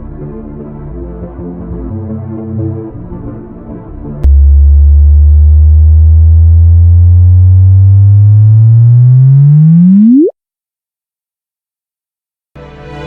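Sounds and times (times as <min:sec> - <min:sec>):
low electronic tone rising to chirp: 0:04.2 - 0:10.3.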